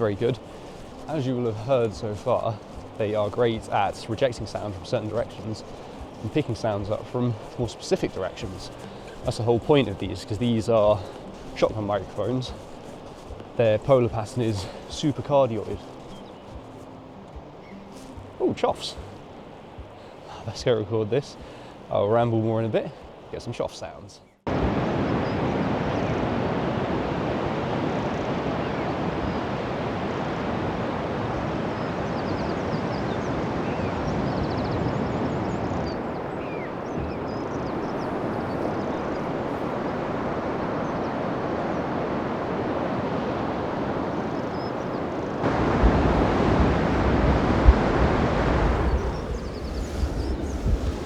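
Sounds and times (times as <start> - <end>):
bird calls: 0.0 - 20.4, 25.0 - 26.5, 28.0 - 51.0
sea surf washing: 0.0 - 51.0
wind rumble on microphone: 24.5 - 51.0.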